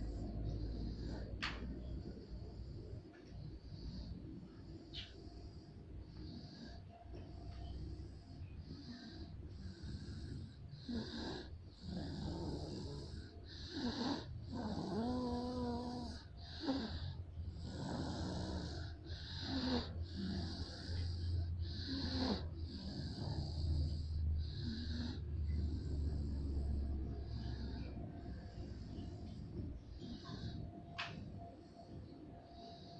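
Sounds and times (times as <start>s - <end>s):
person snoring: 8.0s - 30.7s.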